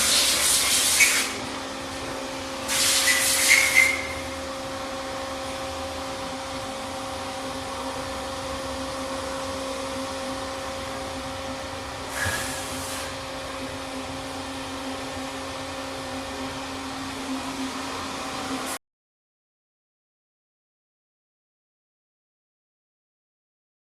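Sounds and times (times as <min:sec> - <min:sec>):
lathe machine hum: 0:00.0 - 0:18.8
brief hiss: 0:02.7 - 0:04.1.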